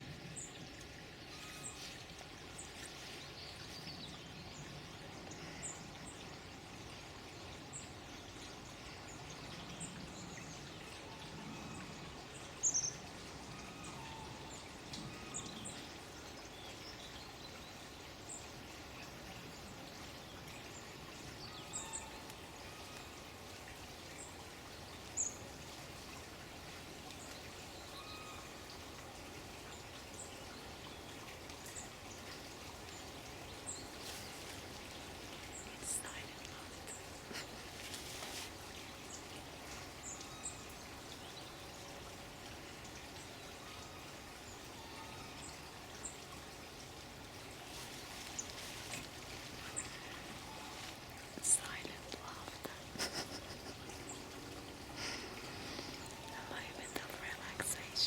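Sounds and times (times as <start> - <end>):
rushing water: 0.0 - 58.0
birds chirping: 32.9 - 39.4, 48.2 - 58.0.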